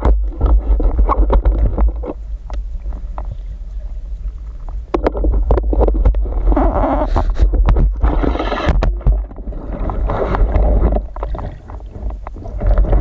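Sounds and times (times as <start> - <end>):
sharp clicks and knocks: 0.0 - 3.3, 4.6 - 6.4
heavy low rumble: 0.0 - 13.0
rush of water: 0.0 - 13.0
water sloshing and gurgling: 0.0 - 13.0.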